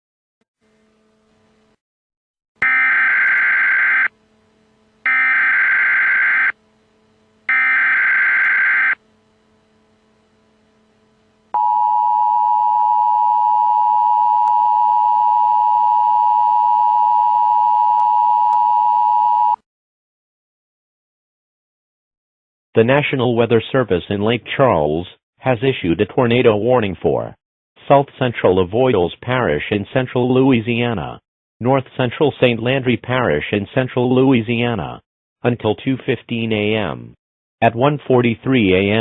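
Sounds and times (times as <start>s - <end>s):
two-tone attention signal: 2.6s - 4.1s, 5.1s - 6.6s, 7.5s - 9.0s, 11.6s - 19.6s.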